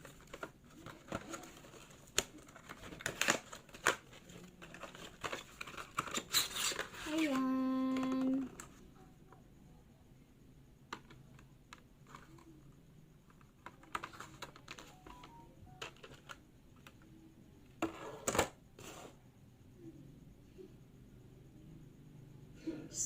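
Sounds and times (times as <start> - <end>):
packaging rustling: 0.0 - 8.7.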